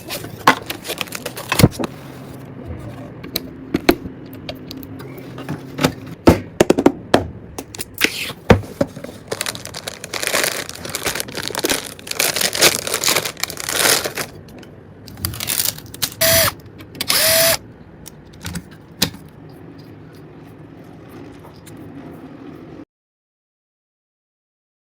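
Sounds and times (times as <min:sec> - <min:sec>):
short whirring bursts: 0:16.2 - 0:17.6.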